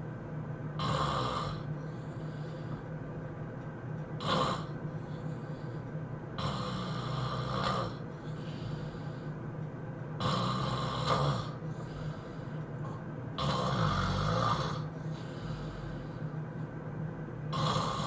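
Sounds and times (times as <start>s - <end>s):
person snoring heavily: 0.8s - 2.8s, 4.2s - 5.8s, 6.4s - 9.4s, 10.2s - 16.4s, 17.5s - 18.0s
quiet breathing: 1.4s - 3.4s, 4.0s - 18.0s.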